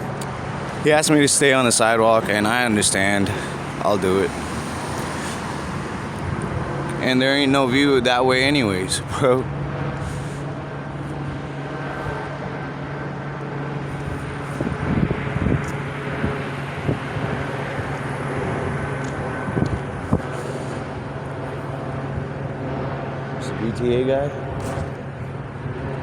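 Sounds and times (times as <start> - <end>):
low engine drone: 0.0 - 26.0.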